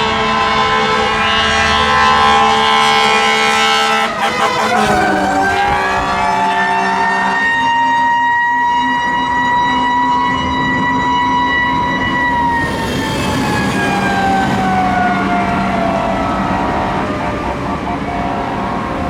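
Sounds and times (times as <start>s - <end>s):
mechanical siren wailing: 0.0s - 19.0s.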